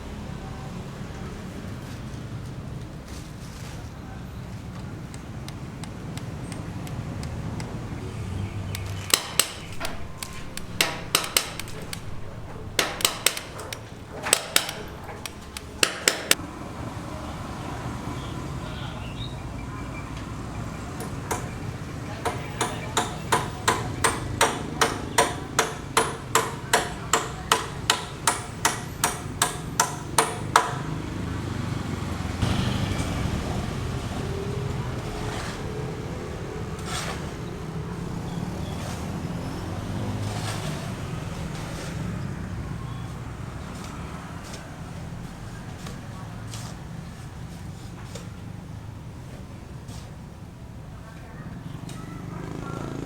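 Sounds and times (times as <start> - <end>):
hammer blows: 8.8 - 16.4, 22.2 - 30.9.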